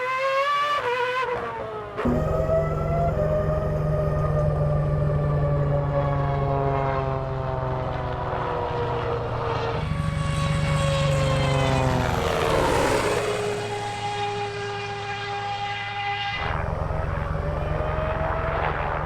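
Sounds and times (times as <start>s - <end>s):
propeller plane engine running hard: 1.8s - 19.0s
rushing whoosh of plane passing: 8.6s - 19.0s.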